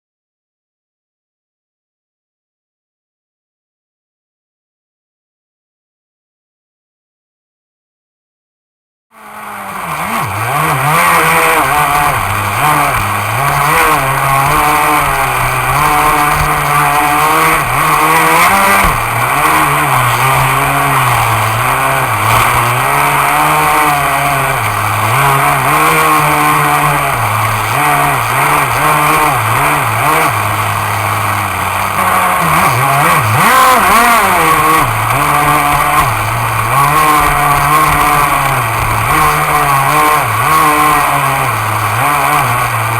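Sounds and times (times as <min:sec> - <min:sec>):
model boat engine running: 0:09.2 - 0:42.9.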